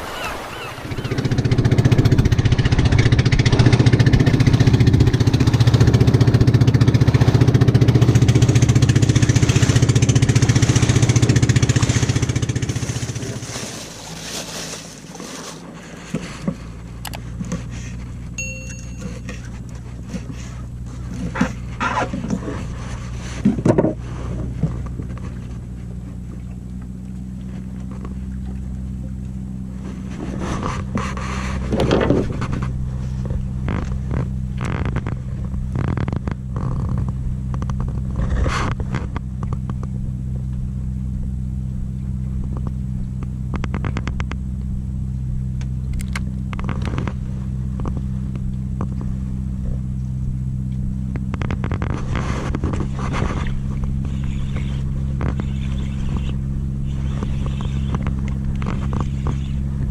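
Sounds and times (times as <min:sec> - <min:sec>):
boat engine humming: 0:00.0 - 0:59.9.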